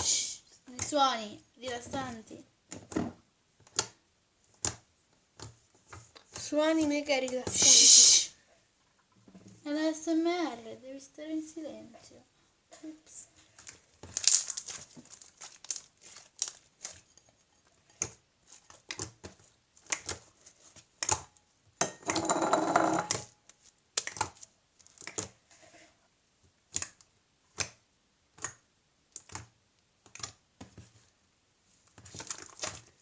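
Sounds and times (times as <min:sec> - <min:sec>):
slime squelching stretch: 0:13.5 - 0:17.1.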